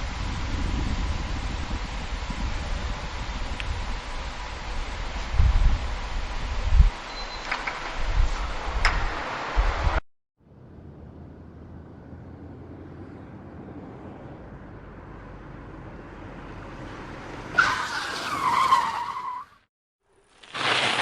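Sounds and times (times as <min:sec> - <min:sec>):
car engine and road noise: 0:00.0 - 0:21.0
tyre screech: 0:17.5 - 0:19.6.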